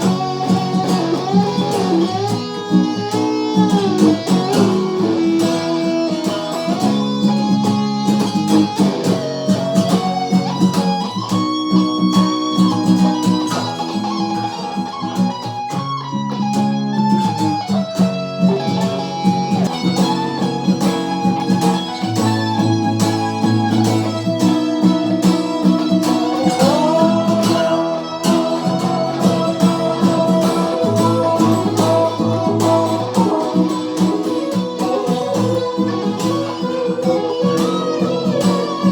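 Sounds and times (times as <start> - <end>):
plucked guitar melody: 0.0 - 38.9
held low guitar chords: 23.7 - 38.9.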